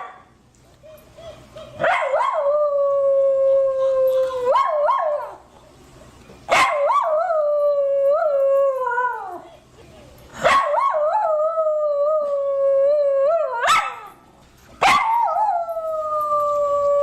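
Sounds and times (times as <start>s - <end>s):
dog howling: 14.9s - 17.0s.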